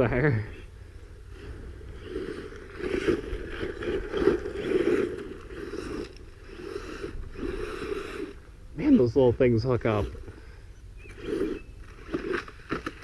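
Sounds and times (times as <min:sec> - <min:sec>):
toy truck tyres scraping dirt: 0:01.2 - 0:13.0.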